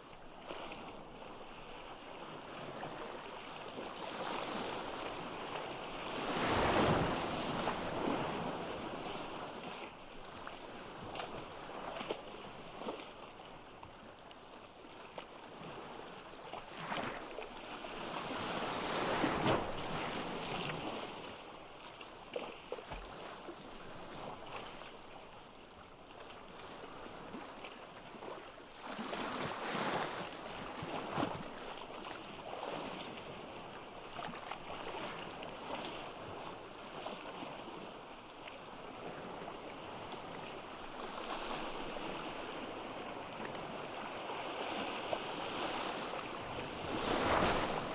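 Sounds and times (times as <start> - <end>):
surf washing on a beach: 5.0 - 9.6, 45.0 - 47.9
big waves breaking: 45.7 - 47.9.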